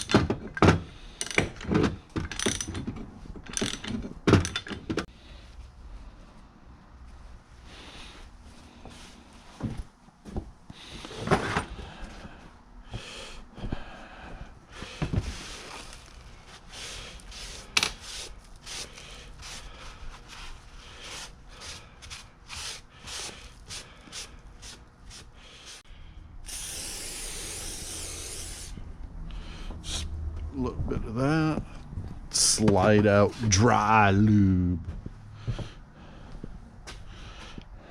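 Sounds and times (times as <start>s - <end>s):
aerosol can spraying hiss: 26.5s - 28.8s.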